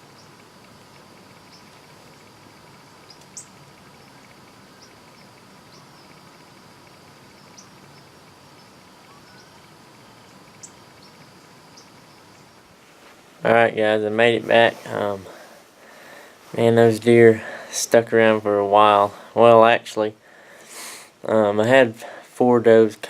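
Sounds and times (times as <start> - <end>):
short high insect chirps: 0.0 - 12.8
crickets trilling: 0.0 - 22.9.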